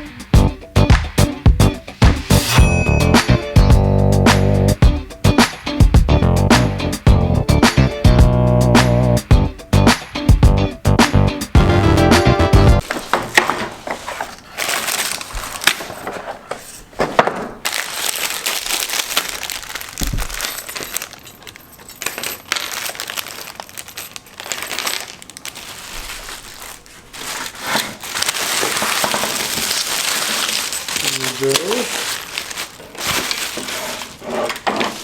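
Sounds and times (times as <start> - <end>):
rustling and crinkling: 12.8 - 35.0.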